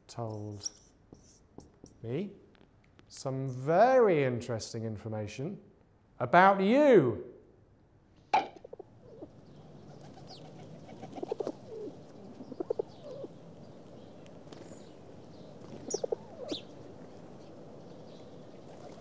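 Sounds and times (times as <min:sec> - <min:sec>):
birds calling low notes: 0:08.6 - 0:19.0.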